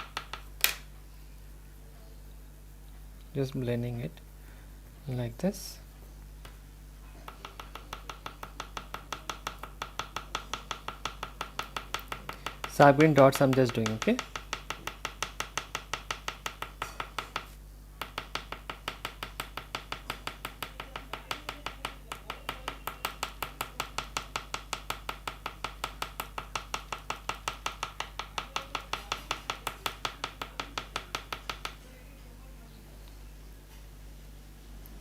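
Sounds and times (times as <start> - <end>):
pastel stick tapping on paper: 0.0 - 0.8, 7.3 - 31.8.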